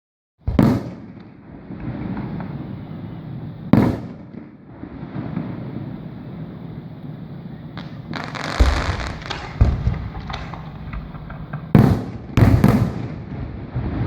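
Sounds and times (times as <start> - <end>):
continuous firework rumble: 0.4 - 14.0
firework shell bursts: 7.8 - 12.0.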